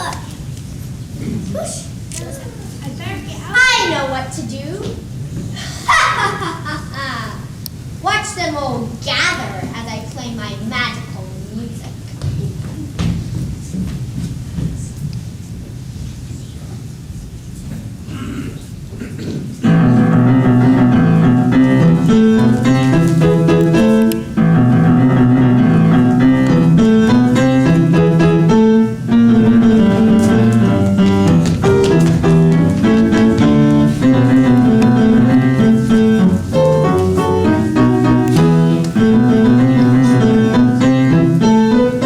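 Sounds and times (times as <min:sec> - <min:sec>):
piano music: 0:19.6 - 0:42.0.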